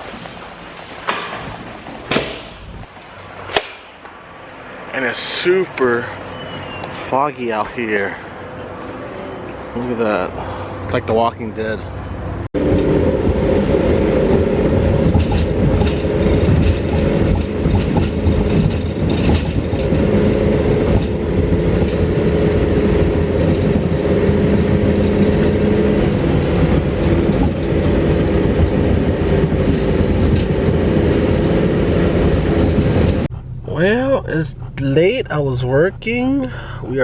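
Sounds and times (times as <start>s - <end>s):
vehicle hum: 0.0s - 37.0s
rattling: 12.6s - 33.3s.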